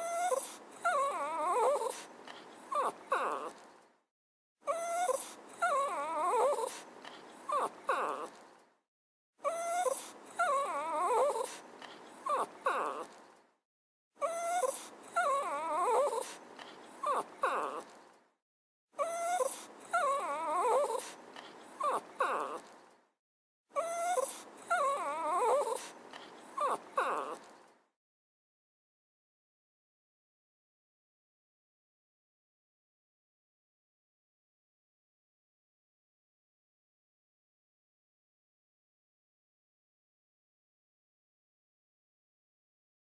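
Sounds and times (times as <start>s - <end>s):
dog whining: 0.0s - 3.7s, 4.7s - 8.4s, 9.4s - 13.2s, 14.2s - 18.0s, 19.0s - 22.8s, 23.8s - 27.7s.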